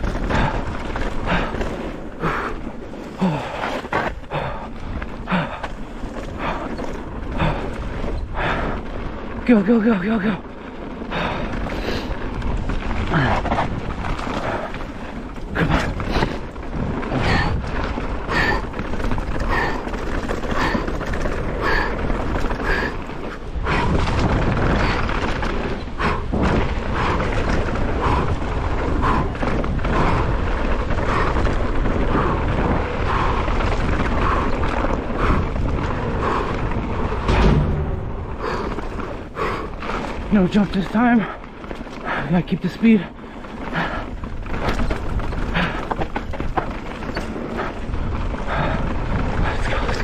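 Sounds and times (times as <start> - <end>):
rider breathing hard: 0.0 - 9.4, 10.4 - 50.0
tyres rumbling over dirt trail: 0.0 - 50.0
wind on microphone: 11.1 - 40.3.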